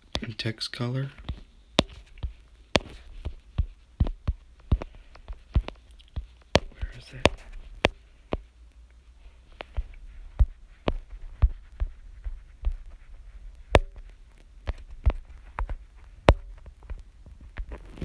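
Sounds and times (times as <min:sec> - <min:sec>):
fingertips tapping touchscreen: 0:01.2 - 0:08.5, 0:09.2 - 0:17.0.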